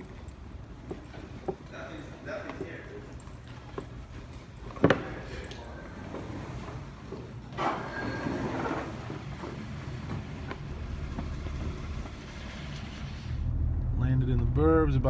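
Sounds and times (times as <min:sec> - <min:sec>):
road rumble inside car: 0:09.6 - 0:15.0.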